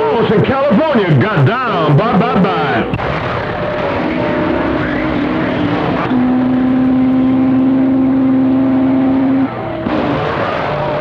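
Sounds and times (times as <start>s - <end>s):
radio band noise and hiss: 0.0s - 11.0s
faint wavering tones: 1.4s - 11.0s
strong steady low tone: 1.5s - 10.1s.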